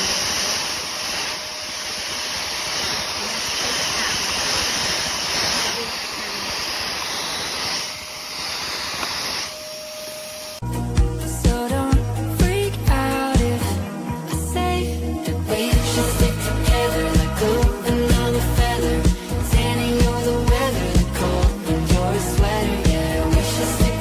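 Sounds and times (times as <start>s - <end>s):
vacuum cleaner running: 0.0s - 10.6s.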